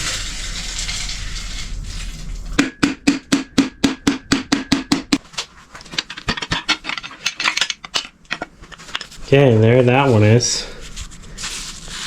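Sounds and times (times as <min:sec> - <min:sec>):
hammer striking metal: 0:02.6 - 0:05.2.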